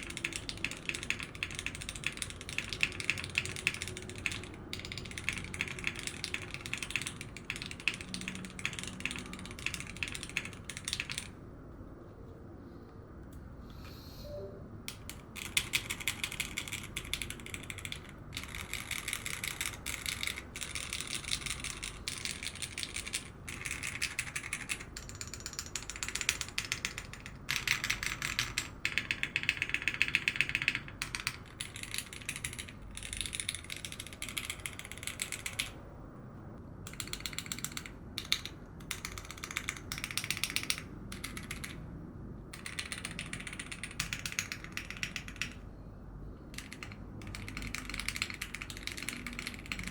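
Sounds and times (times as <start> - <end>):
mechanical keyboard key clacks: 46.6 - 49.9.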